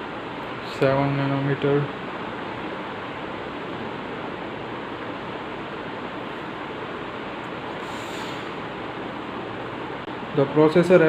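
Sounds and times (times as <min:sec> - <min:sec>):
room background hiss: 0:00.0 - 0:11.0.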